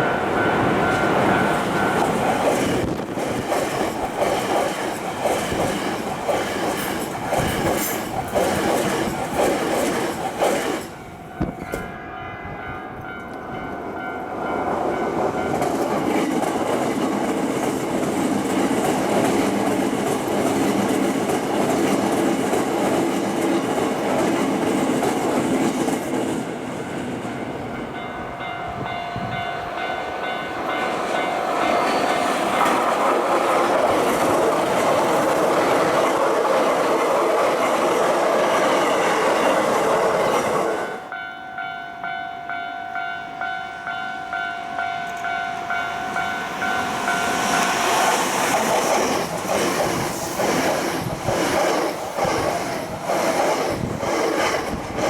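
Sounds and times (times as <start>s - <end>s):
crossing warning bell dinging: 0.0s - 9.0s, 10.8s - 21.2s, 25.8s - 36.0s, 38.9s - 50.0s
train wheel clatter: 0.0s - 11.9s, 15.1s - 27.6s, 30.2s - 40.9s, 45.0s - 55.0s.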